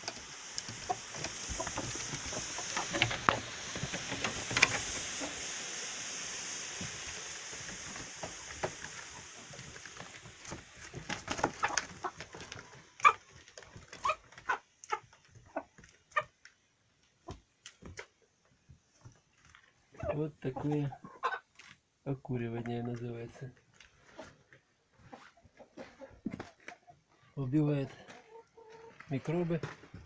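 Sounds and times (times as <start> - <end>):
hens clucking: 0.0 - 5.6, 8.2 - 16.4, 19.9 - 21.7, 22.3 - 29.6
chemical reaction hissing: 0.0 - 16.3.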